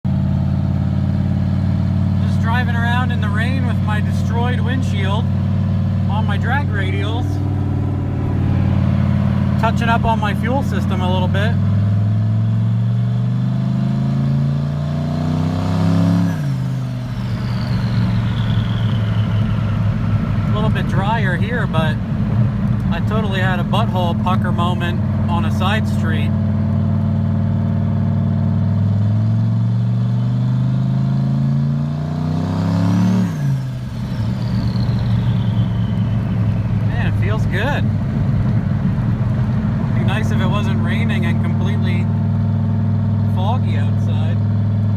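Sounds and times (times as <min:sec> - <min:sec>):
truck engine accelerating: 0:00.0 - 0:44.9
turbo whistle: 0:16.3 - 0:21.0, 0:33.3 - 0:37.7.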